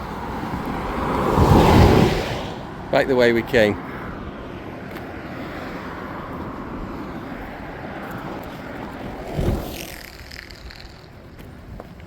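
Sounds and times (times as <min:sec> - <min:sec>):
road traffic passing: 0:00.0 - 0:12.0
short low thump: 0:09.2 - 0:10.0.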